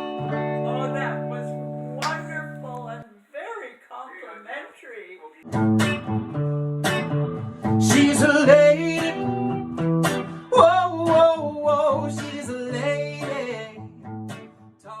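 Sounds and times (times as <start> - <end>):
acoustic guitar plucked and strummed: 5.5 - 14.7
person singing wordless melody: 10.5 - 13.8.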